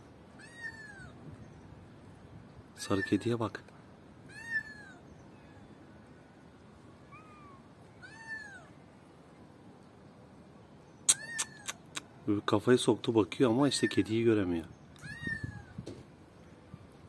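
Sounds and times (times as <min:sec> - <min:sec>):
kitten meows from phone speaker: 0:15.0 - 0:15.8.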